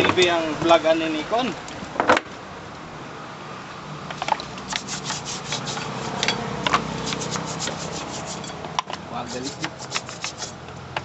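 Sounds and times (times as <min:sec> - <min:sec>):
wire brush scrubbing metal: 0:04.6 - 0:08.6, 0:09.2 - 0:10.6.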